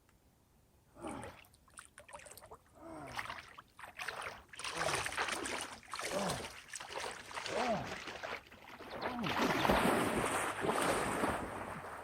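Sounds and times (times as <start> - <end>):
water splashing and sloshing: 1.0 - 12.0.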